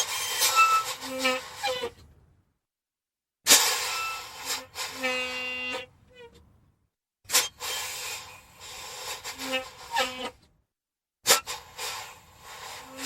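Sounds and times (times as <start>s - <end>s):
steady squealing tone: 0.0s - 2.1s, 3.7s - 6.5s, 7.8s - 10.4s
air brakes hissing: 3.5s - 5.9s, 7.3s - 10.4s, 11.3s - 13.0s.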